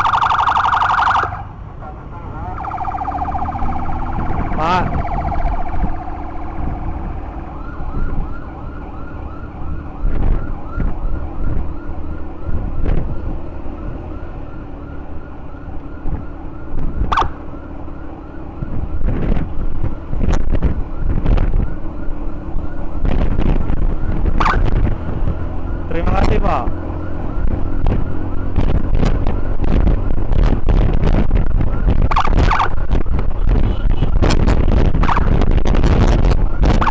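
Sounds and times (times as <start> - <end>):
emergency siren yelping: 0.0 - 33.4, 34.2 - 36.9
heavy wind: 0.0 - 36.9
motorcycle engine rumble: 0.0 - 36.9.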